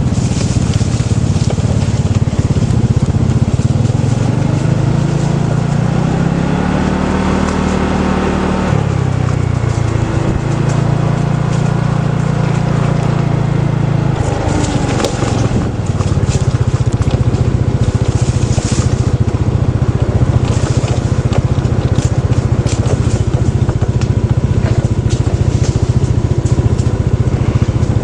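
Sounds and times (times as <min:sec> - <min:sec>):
motorbike engine running: 0:00.0 - 0:28.0
clicks and crackles: 0:14.1 - 0:28.0.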